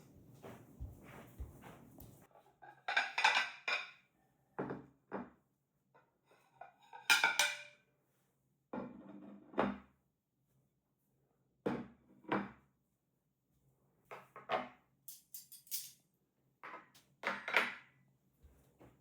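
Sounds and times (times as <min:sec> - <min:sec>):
dishes and utensils clattering: 0:02.8 - 0:04.0, 0:06.4 - 0:07.7, 0:15.1 - 0:16.0.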